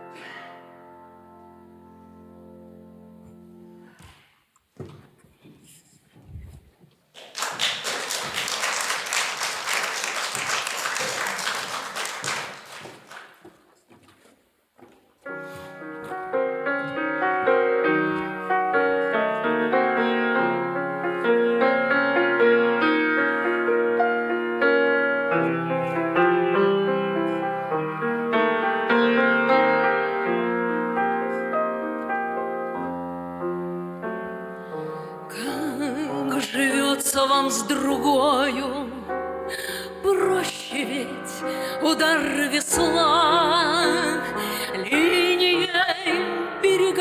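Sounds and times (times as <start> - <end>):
piano playing chords and melody: 0.0 - 3.9, 15.3 - 47.0
audience applause: 7.1 - 13.5.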